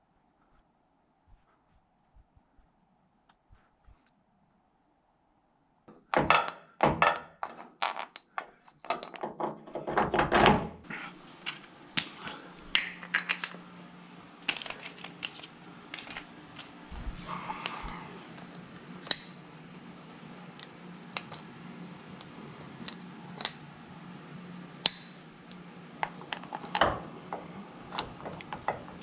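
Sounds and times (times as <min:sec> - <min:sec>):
low steady hum: 0:10.8 - 0:29.0.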